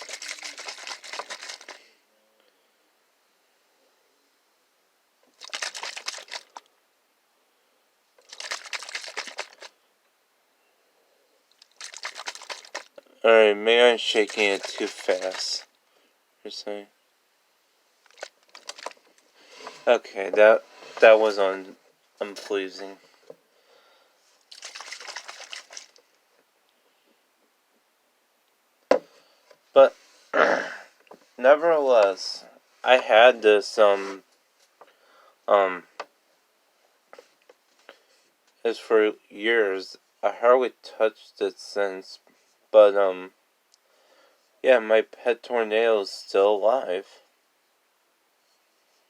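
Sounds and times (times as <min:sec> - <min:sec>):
water sloshing in plastic toy: 0:00.0 - 0:01.8, 0:05.3 - 0:06.7, 0:08.2 - 0:09.7, 0:11.5 - 0:13.0, 0:14.0 - 0:15.7, 0:18.0 - 0:19.1, 0:24.5 - 0:26.1.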